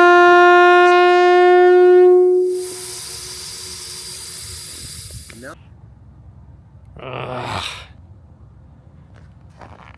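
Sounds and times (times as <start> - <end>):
air horn blowing steady tone: 0.0 - 5.5
air hissing: 2.3 - 5.6.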